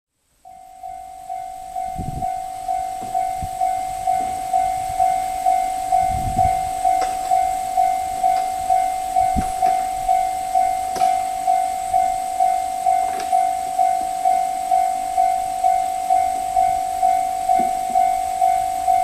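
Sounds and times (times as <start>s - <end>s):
level crossing bell ringing: 0.4s - 19.0s
low thumps: 1.8s - 13.6s.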